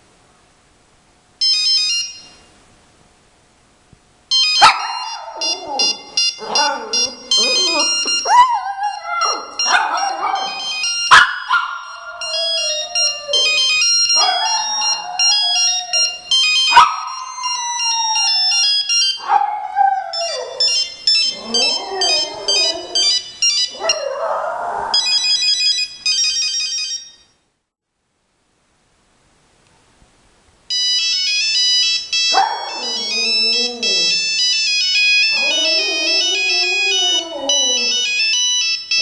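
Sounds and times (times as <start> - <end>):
polyphonic phone ringtone: 1.4 - 2.5, 4.3 - 24.3, 25.0 - 27.4, 30.7 - 39.0
dog howling and whining: 4.6 - 25.4, 32.4 - 34.3, 35.2 - 38.2.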